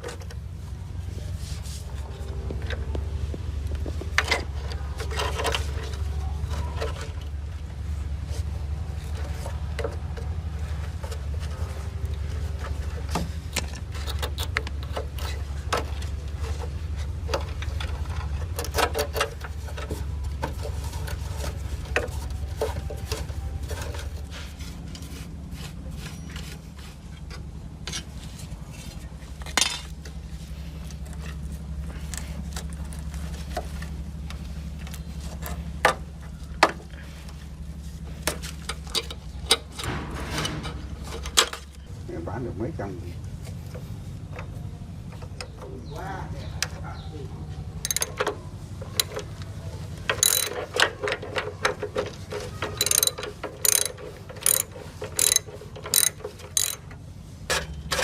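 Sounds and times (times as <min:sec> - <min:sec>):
steady low hum: 0:00.0 - 0:58.0
metal parts and tools clinking: 0:25.9 - 0:33.9, 0:47.8 - 0:58.0.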